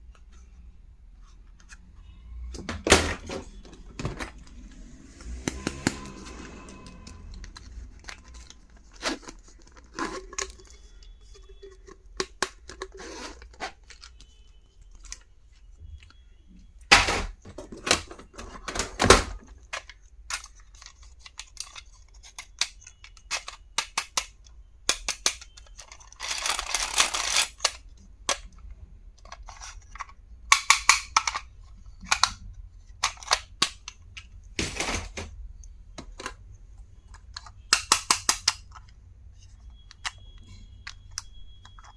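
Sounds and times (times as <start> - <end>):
clicks and taps of small items: 19.7 - 34.4, 36.0 - 39.0.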